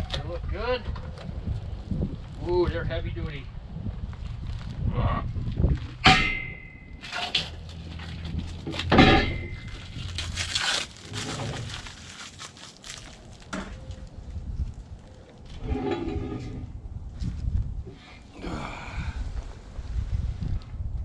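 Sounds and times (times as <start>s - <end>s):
metal clangs ringing: 6.0s - 7.6s, 8.8s - 9.8s
metal scraping and handling: 6.0s - 12.4s, 15.5s - 16.8s.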